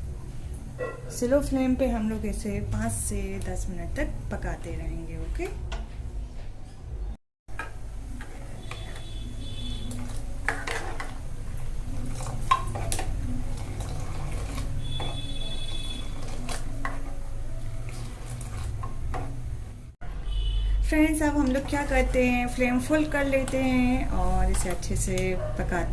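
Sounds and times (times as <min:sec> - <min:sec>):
spoon scraping and clinking in pan: 0:08.1 - 0:11.2, 0:11.9 - 0:17.2.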